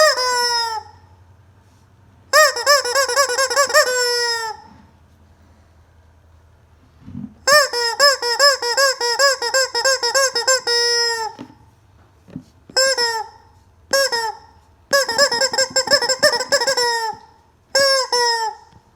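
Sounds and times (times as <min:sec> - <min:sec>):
rubber chicken toy squawking: 0:00.0 - 0:01.1, 0:02.3 - 0:04.9, 0:07.2 - 0:11.7, 0:12.7 - 0:18.9.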